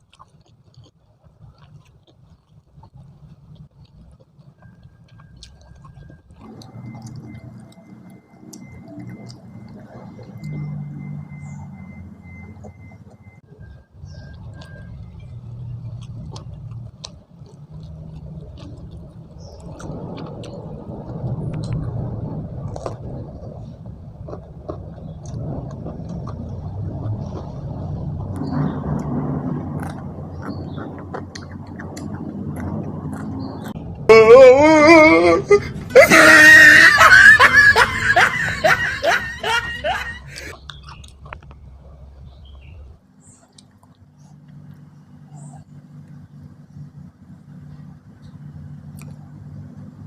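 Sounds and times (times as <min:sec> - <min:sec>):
wet mouth clicks: 0:00.0 - 0:10.6, 0:14.2 - 0:23.2, 0:29.8 - 0:33.8, 0:40.3 - 0:41.6, 0:43.3 - 0:44.8, 0:48.9 - 0:49.4
chewing food: 0:00.0 - 0:34.5, 0:35.6 - 0:50.0
low rumble: 0:02.7 - 0:50.0.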